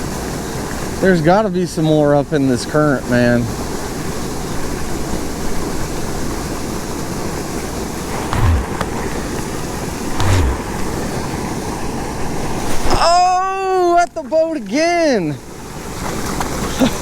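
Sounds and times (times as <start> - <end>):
low thumps: 8.1 - 11.4.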